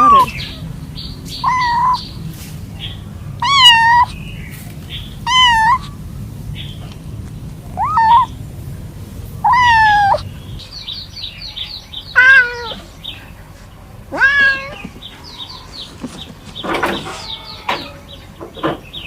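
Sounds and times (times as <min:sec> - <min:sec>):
kittens meowing: 0:00.0 - 0:00.7, 0:01.3 - 0:02.1, 0:03.4 - 0:04.3, 0:04.9 - 0:06.0, 0:07.6 - 0:08.4, 0:09.4 - 0:13.3, 0:14.0 - 0:18.4.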